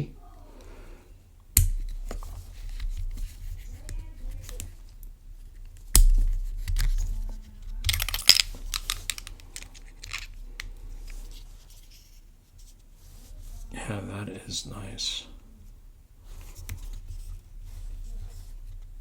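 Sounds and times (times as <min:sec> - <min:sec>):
small clicks and rustling: 0:01.6 - 0:12.9.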